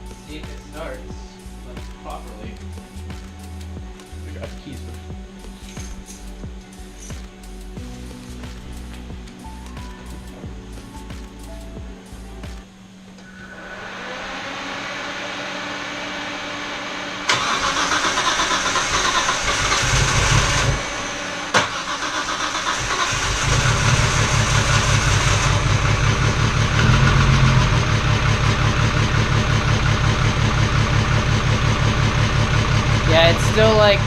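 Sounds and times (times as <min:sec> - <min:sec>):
starter motor whine: 0:13.0 - 0:34.0
car engine misfiring: 0:17.2 - 0:34.0.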